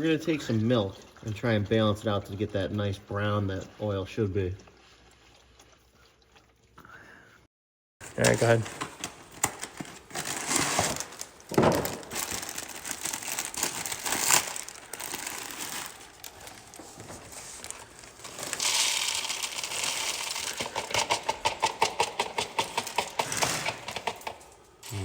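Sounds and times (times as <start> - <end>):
plastic bag crinkling: 8.0 - 24.2.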